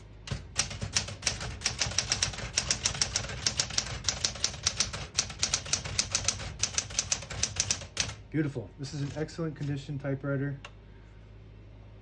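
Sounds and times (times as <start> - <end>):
typewriter keys striking: 0.3 - 8.2, 9.0 - 9.7.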